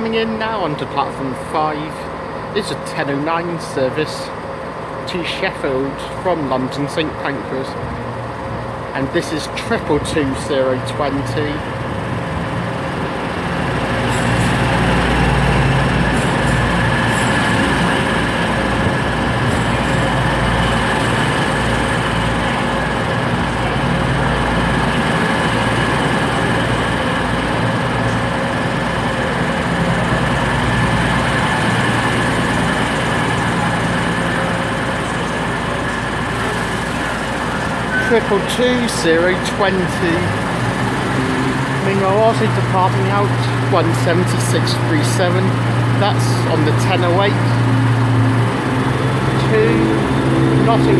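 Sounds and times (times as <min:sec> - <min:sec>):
diesel train engines: 0:00.0 - 0:50.9
rumbling wheel noise: 0:07.5 - 0:50.9
high steady tones: 0:30.3 - 0:44.1.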